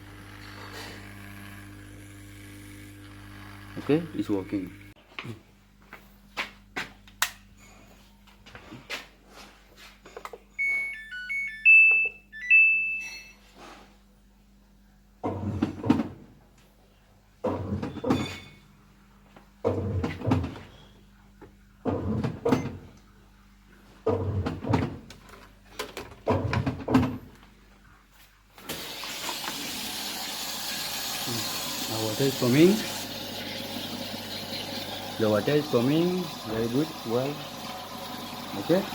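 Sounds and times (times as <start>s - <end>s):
washing machine short beeps: 10.5s - 13.4s.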